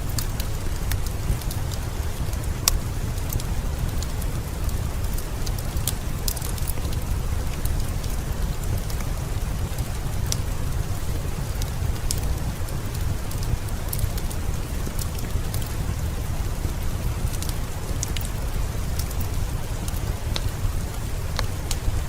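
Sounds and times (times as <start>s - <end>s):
heavy rain: 0.0s - 22.0s.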